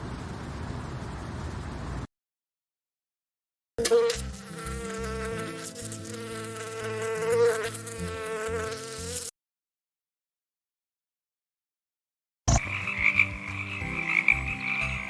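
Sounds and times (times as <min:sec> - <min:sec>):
insect wings buzzing: 0:03.8 - 0:09.3, 0:12.6 - 0:15.0.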